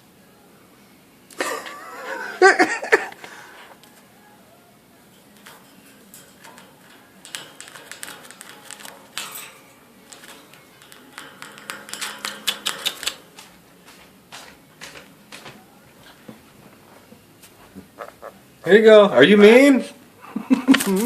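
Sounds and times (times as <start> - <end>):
parakeet beak tapping cage: 5.4 - 15.6.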